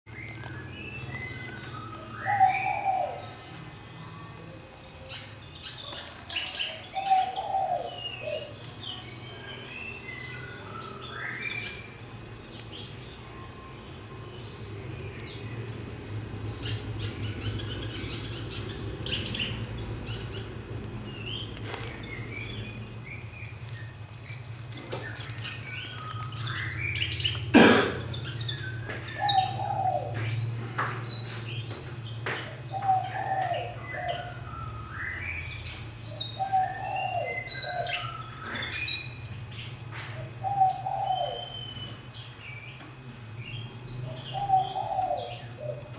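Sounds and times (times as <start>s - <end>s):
bird singing whistled notes: 9.2s - 12.0s.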